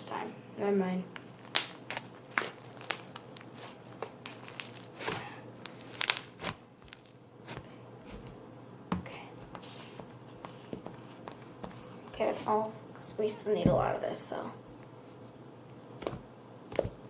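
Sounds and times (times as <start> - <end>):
slime sticky clicks and crackles: 1.2 - 7.1.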